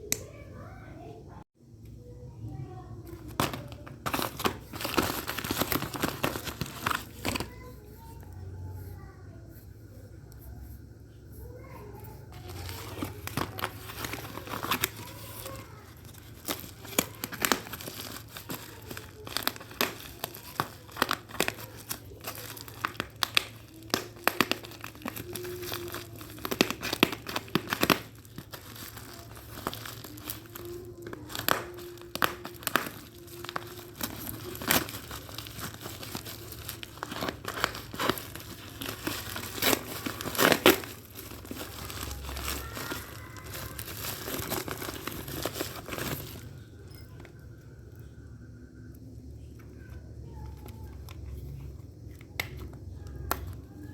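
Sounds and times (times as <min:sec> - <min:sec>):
packaging crinkling and tearing: 0:03.0 - 0:08.2, 0:12.3 - 0:47.4.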